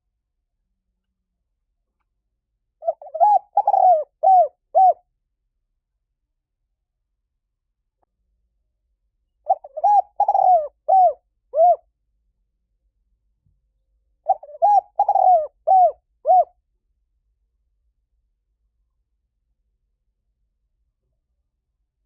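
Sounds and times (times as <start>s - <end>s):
dove cooing: 2.8s - 5.0s, 9.5s - 11.8s, 14.2s - 16.5s.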